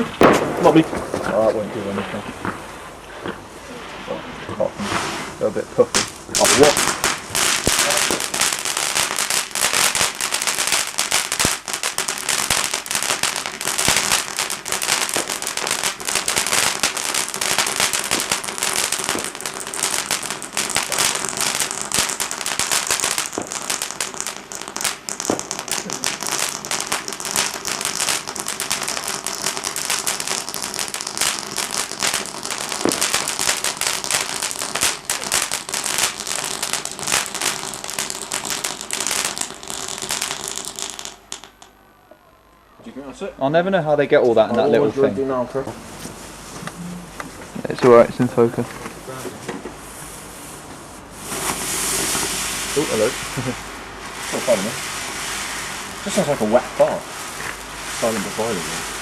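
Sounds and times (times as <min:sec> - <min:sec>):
firework crackling pops: 0:00.0 - 0:03.4, 0:04.0 - 0:41.8, 0:45.6 - 0:59.0.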